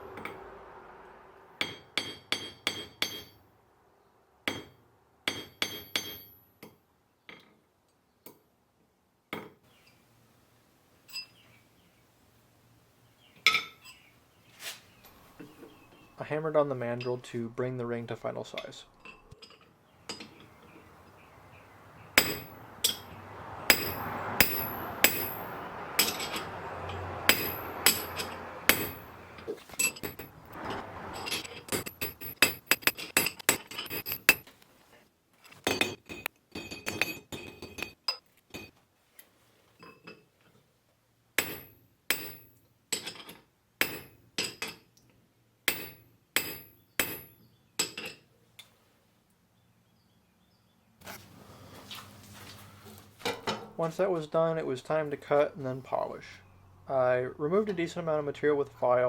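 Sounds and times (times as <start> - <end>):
hammer striking steel mandrel: 1.6 - 3.4, 4.5 - 6.3, 22.2 - 29.2, 45.7 - 47.3.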